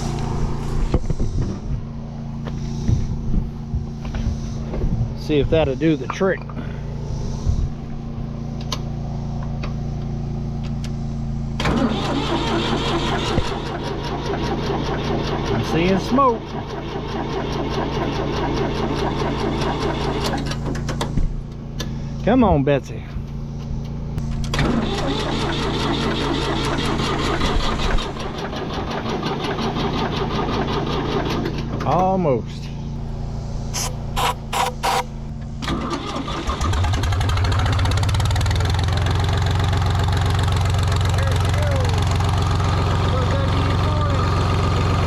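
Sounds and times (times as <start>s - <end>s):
steady low drone: 0.0s - 11.5s
tractor engine cranking and sputtering: 0.0s - 45.0s.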